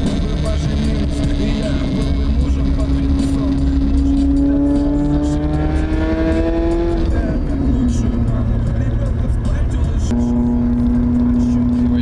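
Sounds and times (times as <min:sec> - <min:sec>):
loud car exhaust drone: 0:00.0 - 0:12.0.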